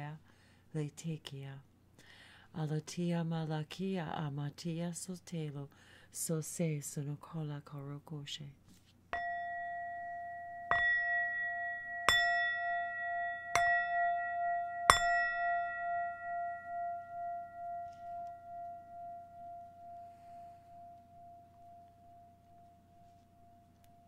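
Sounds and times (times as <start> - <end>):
singing bowl ringing: 9.2 - 24.0.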